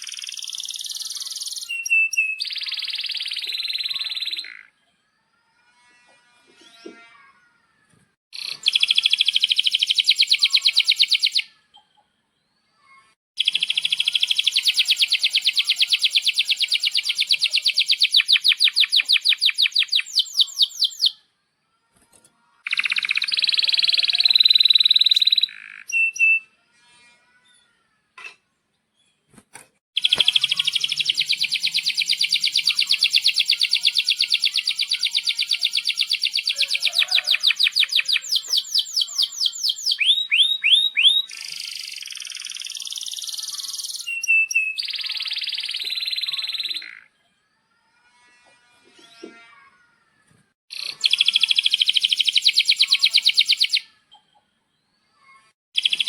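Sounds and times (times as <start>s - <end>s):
canary singing trills: 0.0s - 4.7s, 8.4s - 11.6s, 13.4s - 21.2s, 30.0s - 47.1s, 50.7s - 54.4s, 55.8s - 56.0s.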